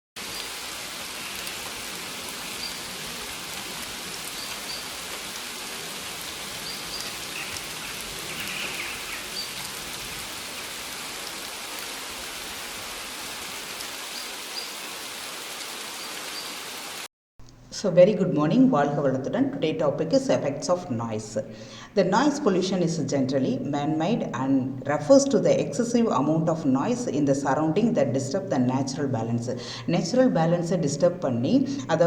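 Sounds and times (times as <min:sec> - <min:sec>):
rain hissing: 0:00.2 - 0:17.1.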